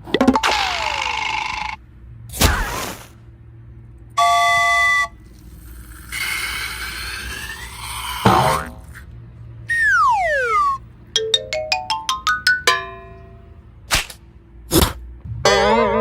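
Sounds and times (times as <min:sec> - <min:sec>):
falling pitch glide: 0:09.7 - 0:13.3
wobbling warbling tone: 0:09.7 - 0:13.5
rising plinked notes: 0:11.2 - 0:13.5.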